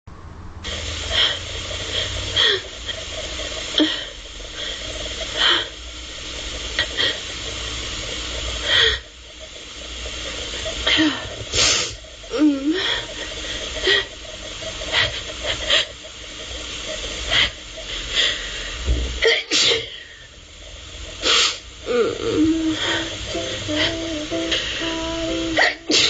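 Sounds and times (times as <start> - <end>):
steady hiss and hum: 0.1 - 26.0
person sneezing: 19.2 - 20.0, 25.6 - 26.0.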